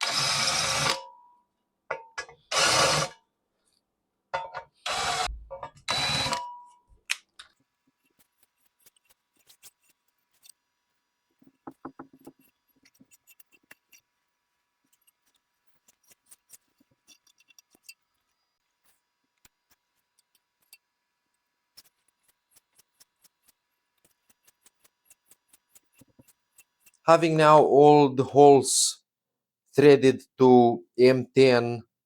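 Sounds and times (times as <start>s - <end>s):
power drill drilling metal: 0.0s - 1.1s, 2.5s - 3.2s, 4.8s - 6.5s
faint metallic clicks and taps: 11.4s - 14.2s, 14.8s - 20.9s.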